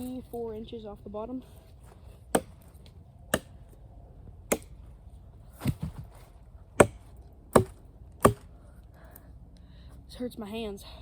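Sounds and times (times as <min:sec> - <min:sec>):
blade chopping wood: 0:02.3 - 0:02.7, 0:03.3 - 0:03.6, 0:04.5 - 0:04.8, 0:06.8 - 0:08.5.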